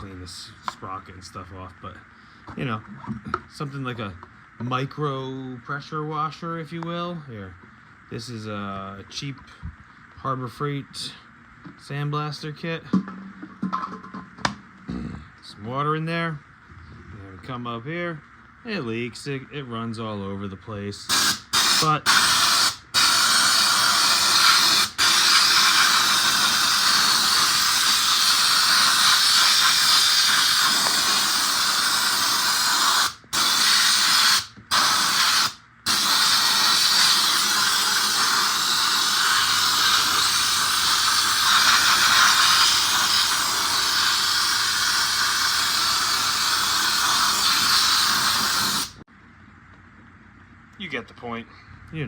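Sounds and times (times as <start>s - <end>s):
hiss of compressed air and water: 21.1s - 49.0s.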